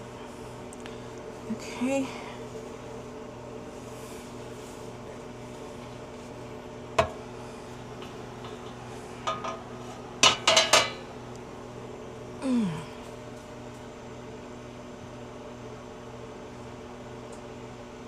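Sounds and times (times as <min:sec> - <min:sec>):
electrical hum: 0:00.0 - 0:18.0.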